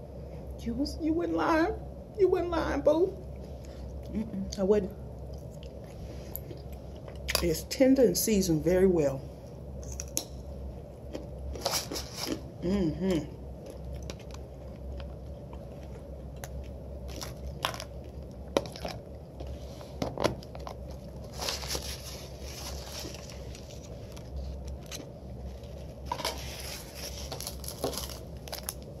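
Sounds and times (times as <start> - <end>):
person chewing food: 5.2 - 7.3, 13.6 - 19.6
food crunches: 13.6 - 19.2, 20.4 - 29.0.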